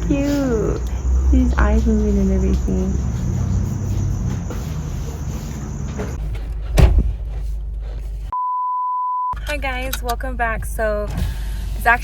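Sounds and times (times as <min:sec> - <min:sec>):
loud knock: 0:06.8 - 0:07.1.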